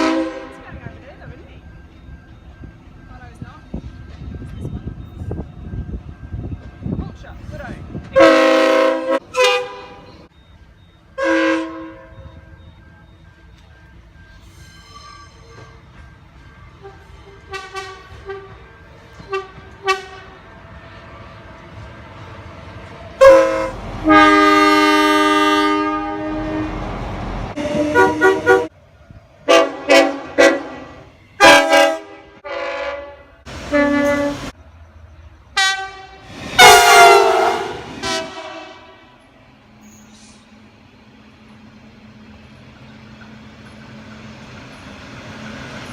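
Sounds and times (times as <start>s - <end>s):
train air horn blasts: 0.0s - 0.6s, 8.2s - 10.1s, 11.2s - 12.1s, 16.8s - 18.6s, 19.2s - 20.4s, 23.2s - 26.9s, 27.6s - 28.7s, 29.5s - 34.5s, 35.6s - 39.2s.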